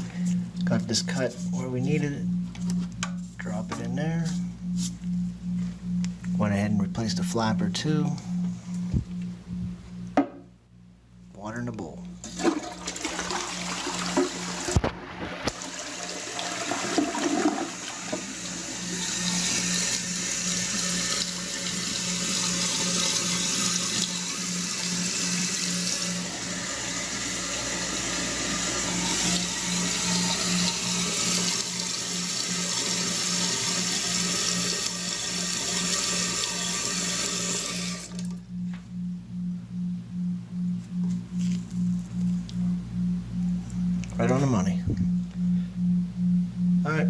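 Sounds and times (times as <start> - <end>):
water rushing into toilet tank: 12.2 - 38.4.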